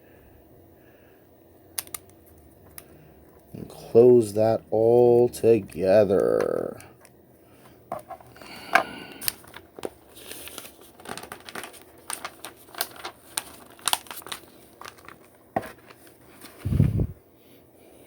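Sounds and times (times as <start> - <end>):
plastic bricks clicking together: 1.8 - 2.8
crinkling: 7.7 - 16.7.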